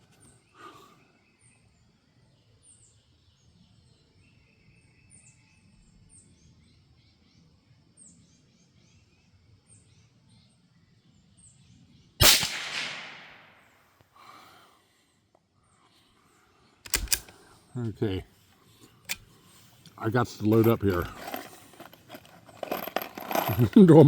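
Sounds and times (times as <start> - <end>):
rifle shot with echo: 12.2 - 13.7.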